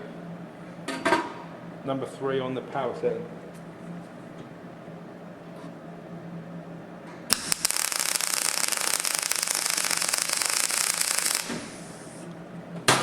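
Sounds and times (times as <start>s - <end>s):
welding arc crackling: 7.3s - 12.3s.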